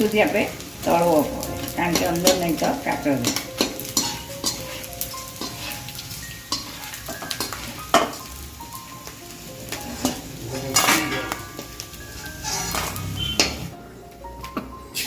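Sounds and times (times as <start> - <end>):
gum sizzling and crackling in oil: 0.0 - 13.8
spoon scraping and clinking on pan: 2.0 - 8.3, 9.8 - 13.7.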